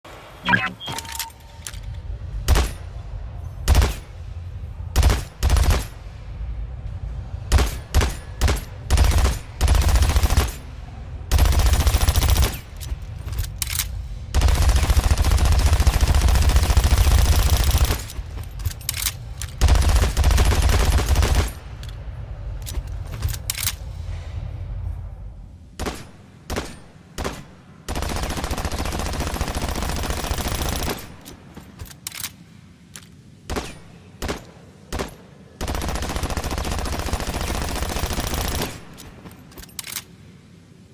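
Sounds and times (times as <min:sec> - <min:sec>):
submachine gun firing: 0:05.0 - 0:06.0, 0:07.5 - 0:10.6, 0:14.3 - 0:18.2, 0:18.9 - 0:21.6, 0:25.8 - 0:31.2, 0:33.5 - 0:39.0.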